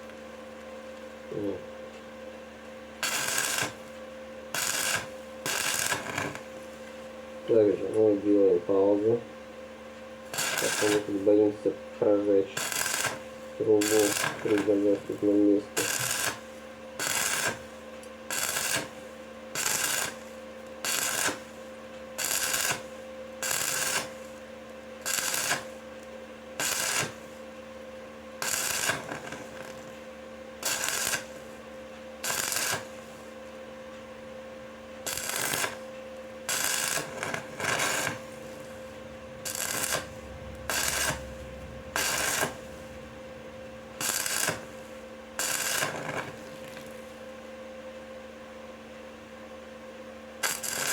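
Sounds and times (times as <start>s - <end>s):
welding machine hum: 2.8s - 9.2s, 10.2s - 33.4s, 34.9s - 48.4s, 50.3s - 50.9s
welding arc crackling hiss: 3.0s - 3.9s, 4.5s - 6.7s, 10.3s - 11.4s, 12.4s - 26.0s, 26.6s - 27.4s, 28.4s - 29.9s, 30.6s - 31.6s, 32.2s - 33.4s, 35.0s - 35.8s, 36.4s - 47.3s, 50.4s - 50.9s.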